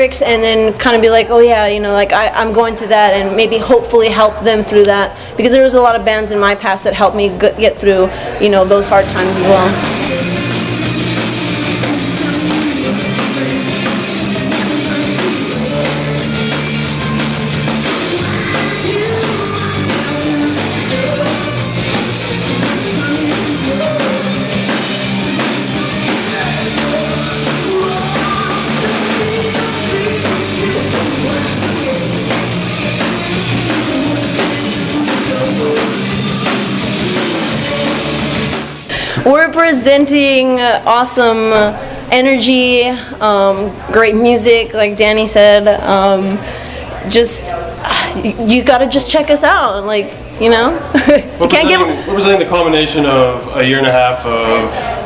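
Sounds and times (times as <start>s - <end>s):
electric guitars: 8.2s - 39.2s
bass guitar: 8.5s - 39.2s, 50.2s - 53.6s
drum kit with cymbal hits: 8.7s - 39.9s
person singing: 8.9s - 38.3s.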